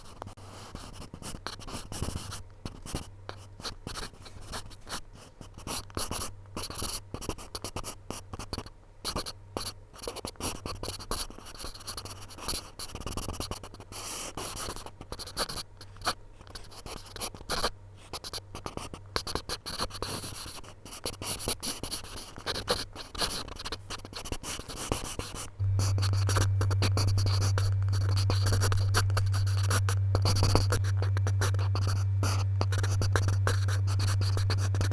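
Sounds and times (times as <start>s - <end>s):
steady low hum: 25.2s - 34.9s.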